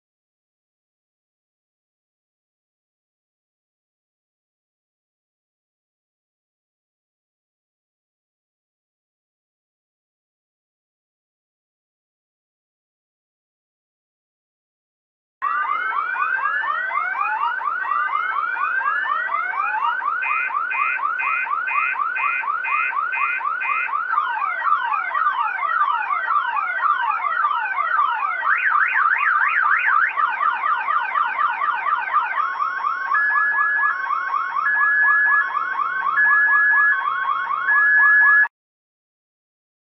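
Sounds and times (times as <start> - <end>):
car alarm siren: 15.4 - 38.6.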